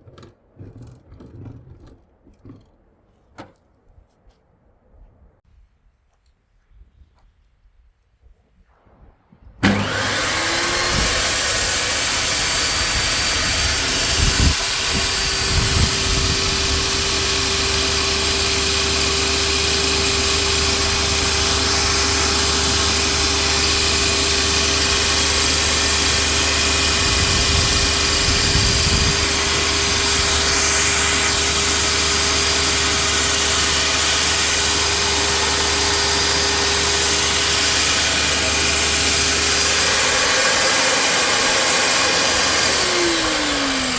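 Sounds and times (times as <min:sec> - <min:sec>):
table saw whining: 0:09.6 - 0:43.9.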